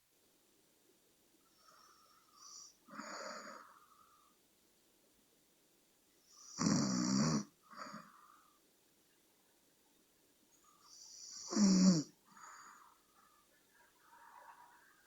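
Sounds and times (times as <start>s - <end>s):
soft breathing: 1.4s - 4.5s, 7.6s - 8.8s, 10.5s - 15.0s
person snoring: 6.4s - 8.1s, 11.0s - 12.6s.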